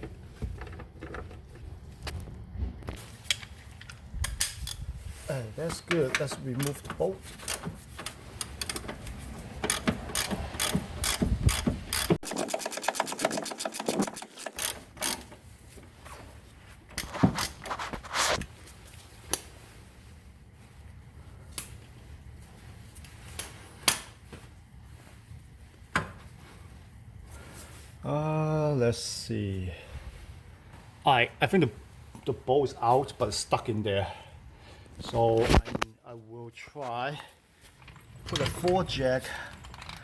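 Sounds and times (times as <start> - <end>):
ratchet wrench clicking: 7.4 - 15.3
metal clinks and knocks: 37.6 - 40.0.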